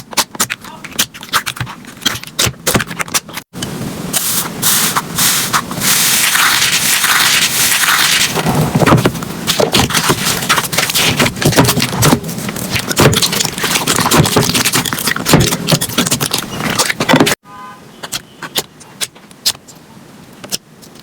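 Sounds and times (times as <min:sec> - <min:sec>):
sticky clicks and crackling pops: 0:06.2 - 0:17.4, 0:18.0 - 0:19.8, 0:20.4 - 0:21.0.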